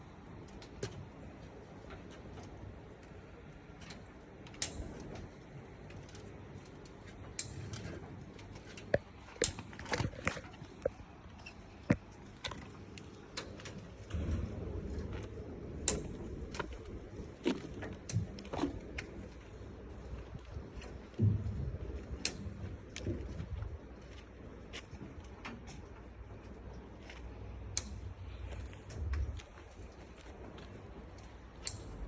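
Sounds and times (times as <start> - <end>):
sharp clicks and light knocks: 0.4 - 19.6, 20.2 - 32.0
faint low rumble: 9.9 - 32.0.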